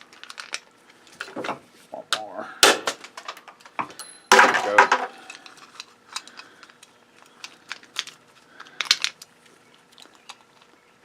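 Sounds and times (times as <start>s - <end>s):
small metal parts clicking: 0.0s - 0.7s, 3.1s - 10.8s.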